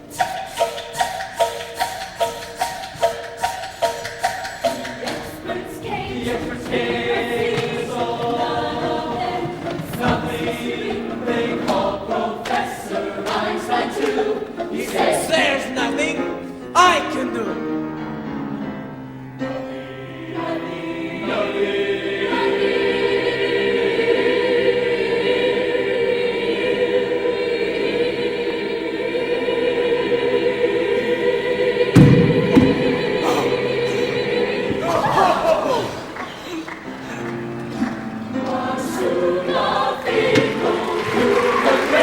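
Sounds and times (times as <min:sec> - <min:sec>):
choir singing: 0:00.0 - 0:18.4, 0:19.4 - 0:42.0
instrumental accompaniment: 0:00.0 - 0:35.2
thump: 0:32.0 - 0:33.5.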